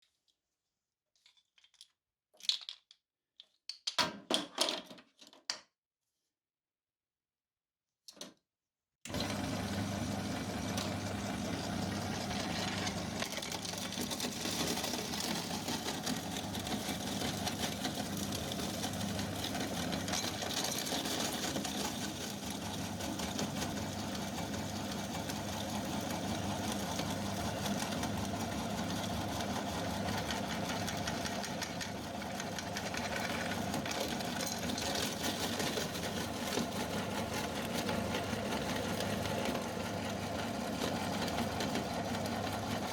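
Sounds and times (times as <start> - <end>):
electric meat grinder grinding candy: 9.1 - 42.9.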